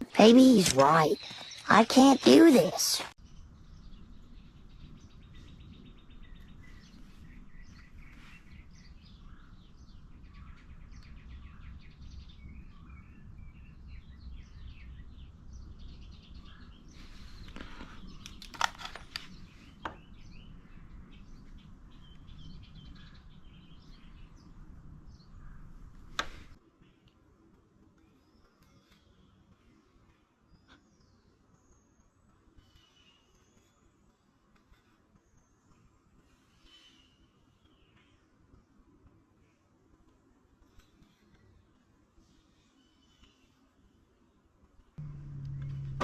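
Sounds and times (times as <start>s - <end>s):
small birds chirping: 0.0s - 27.2s, 27.9s - 38.3s
low background rumble: 45.0s - 46.0s.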